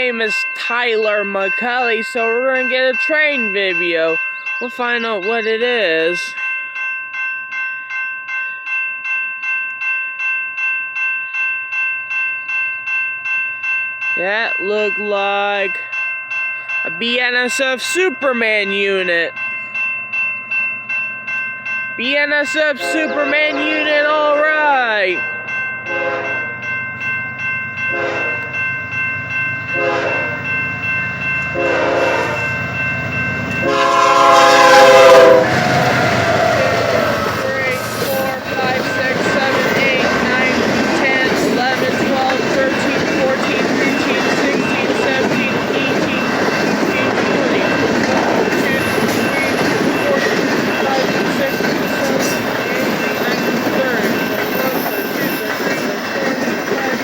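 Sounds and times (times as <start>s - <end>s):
crossing warning bell ringing: 0.0s - 57.0s
rumble of passing train: 19.1s - 57.0s
locomotive air horn blasts: 22.8s - 24.0s, 25.9s - 26.4s, 27.9s - 28.5s, 29.8s - 30.4s, 31.6s - 32.4s, 33.6s - 37.9s.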